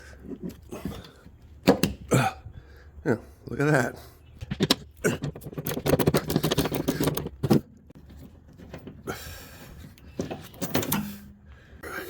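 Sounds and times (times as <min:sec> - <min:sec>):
tools clicking and scraping: 0:04.4 - 0:09.1.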